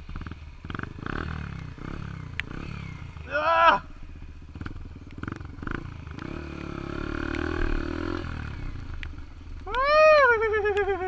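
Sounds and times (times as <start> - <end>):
dirt bike engine revving: 0.0 - 3.8, 4.4 - 9.0
high wavering cry: 9.7 - 11.0.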